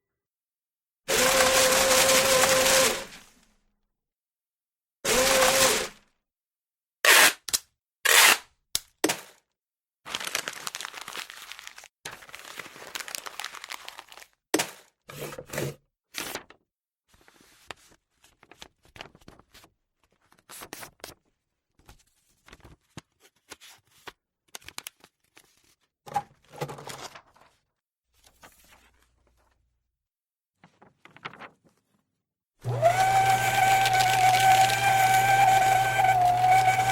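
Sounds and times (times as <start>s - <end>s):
paper tearing and crumpling: 1.1s - 3.3s, 10.1s - 16.6s, 31.1s - 31.5s, 32.7s - 36.9s
faint paper rustling: 10.1s - 25.9s, 26.6s - 29.8s, 30.6s - 32.2s.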